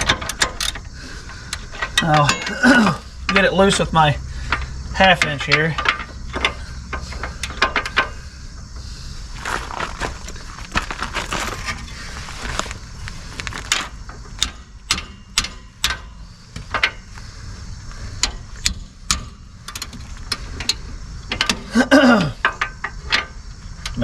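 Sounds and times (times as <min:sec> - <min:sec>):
ratchet clicking: 0:18.1 - 0:21.6.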